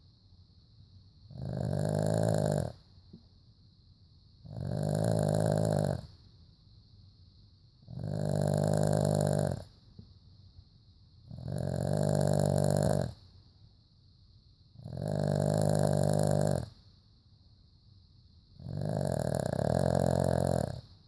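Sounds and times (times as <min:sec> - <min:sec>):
dog snoring: 0:01.3 - 0:02.8, 0:04.4 - 0:06.2, 0:07.9 - 0:09.7, 0:11.3 - 0:13.2, 0:14.8 - 0:16.8, 0:18.6 - 0:20.9.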